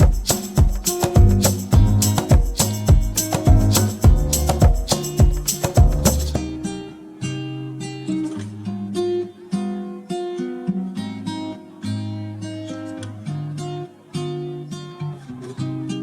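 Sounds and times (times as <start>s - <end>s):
acoustic guitar plucking: 0.0s - 16.0s.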